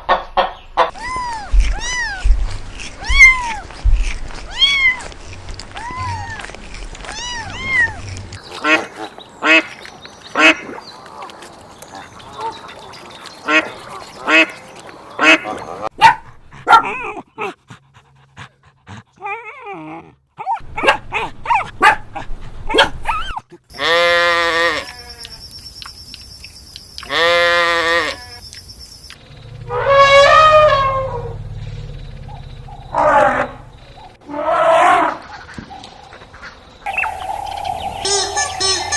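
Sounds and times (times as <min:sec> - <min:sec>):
long rising and falling calls: 0:36.9 - 0:38.9.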